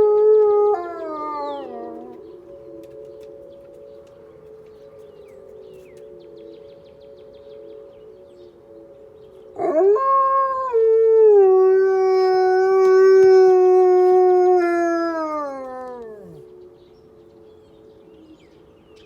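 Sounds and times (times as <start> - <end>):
dog howling: 0.0 - 2.4, 9.6 - 16.5
faint steady wail: 0.0 - 5.5, 9.6 - 16.6.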